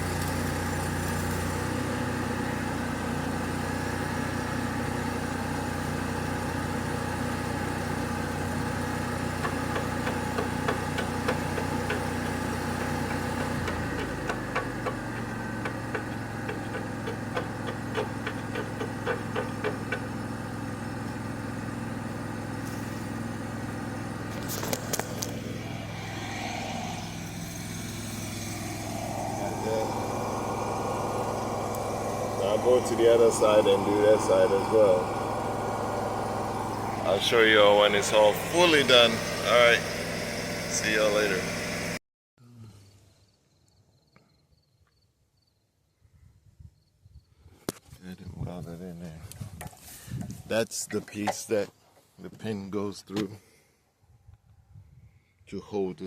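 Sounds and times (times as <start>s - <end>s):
engine running: 0.0s - 42.0s
sharp knocks: 9.4s - 20.2s.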